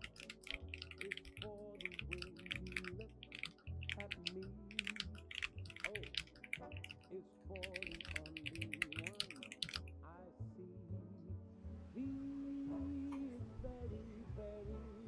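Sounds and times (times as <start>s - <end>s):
mechanical keyboard typing: 0.0s - 7.0s, 7.6s - 9.8s
faint background music: 0.0s - 15.0s.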